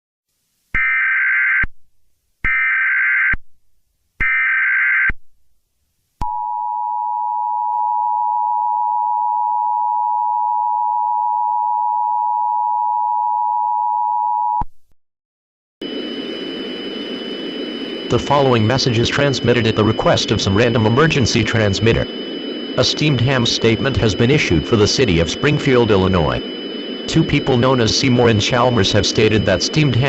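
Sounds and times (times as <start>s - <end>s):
digital header data bursts: 15.8s - 30.0s
two-tone attention signal: 15.8s - 30.0s.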